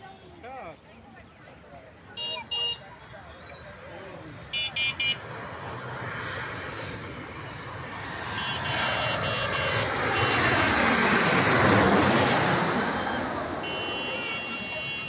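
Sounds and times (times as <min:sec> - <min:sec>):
aeroplane passing overhead: 0:03.6 - 0:15.0.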